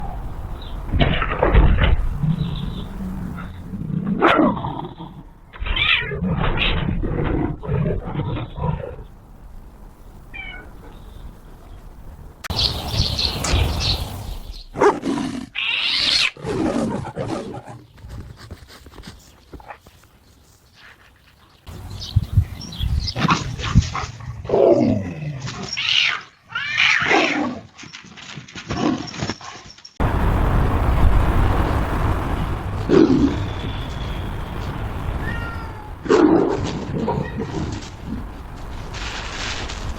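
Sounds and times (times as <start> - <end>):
steady rushing noise: 0.0 - 4.0, 8.4 - 14.8, 30.0 - 39.9
animal growls and yowling cries: 0.9 - 9.1, 23.2 - 27.8, 35.2 - 38.4
animal cries: 15.5 - 16.4, 25.5 - 27.6, 35.1 - 38.0.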